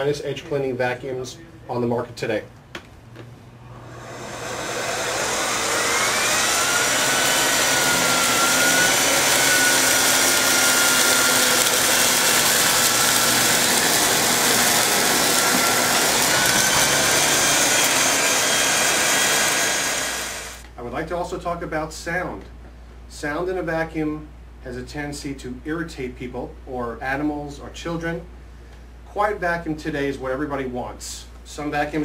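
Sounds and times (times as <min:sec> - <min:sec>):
vacuum cleaner high whine: 0:03.7 - 0:20.7.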